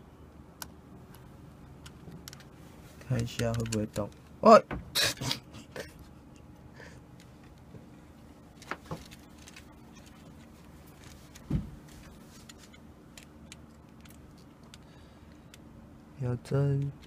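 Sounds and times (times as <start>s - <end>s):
faint steady hum: 0.0s - 17.0s
clock parts clicking and tapping: 3.2s - 4.2s.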